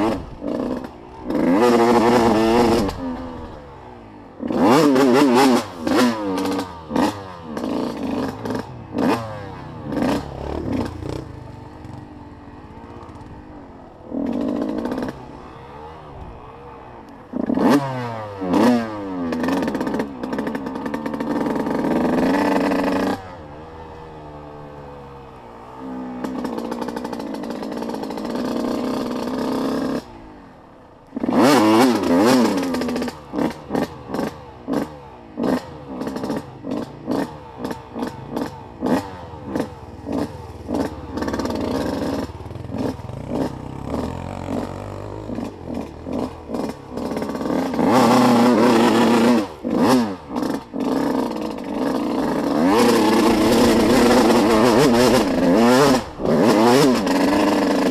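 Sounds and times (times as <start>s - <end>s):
off-road vehicle engine revving: 0.0s - 30.3s, 31.0s - 57.9s.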